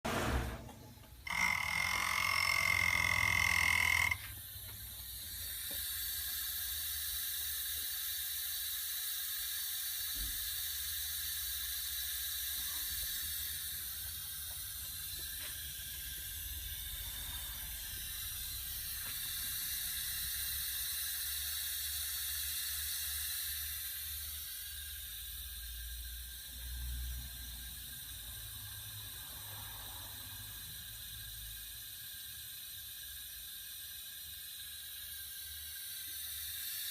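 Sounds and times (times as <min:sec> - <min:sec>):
loud pitched tone: 0:01.2 - 0:04.3
high-pitched hiss: 0:01.2 - 0:36.9.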